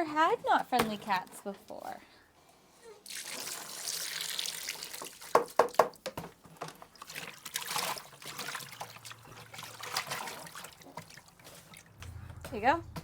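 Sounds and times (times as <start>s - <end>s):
water running and splashing: 3.0s - 5.6s, 6.8s - 12.0s.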